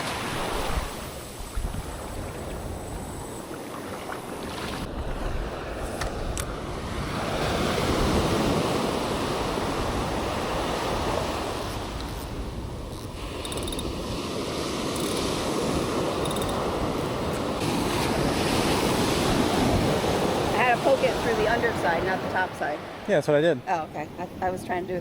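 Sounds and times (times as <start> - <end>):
wind on microphone: 0.0 - 22.8
ocean waves washing onto beach: 0.0 - 25.0.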